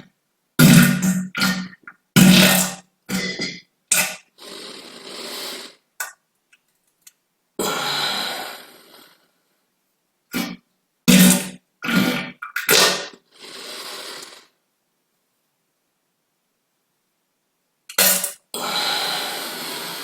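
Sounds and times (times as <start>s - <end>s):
short loud farts: 0.0s - 4.2s, 10.3s - 13.2s, 17.9s - 18.4s
airy hissing gas: 4.4s - 5.8s, 12.9s - 14.6s, 18.6s - 20.0s.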